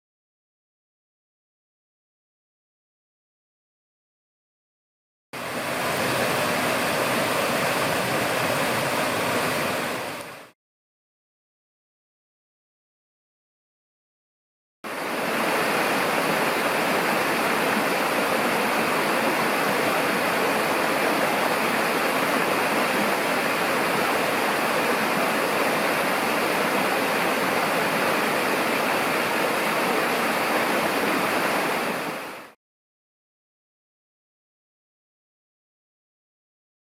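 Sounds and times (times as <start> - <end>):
stream water rushing over rocks: 5.4 - 10.5, 14.9 - 32.6.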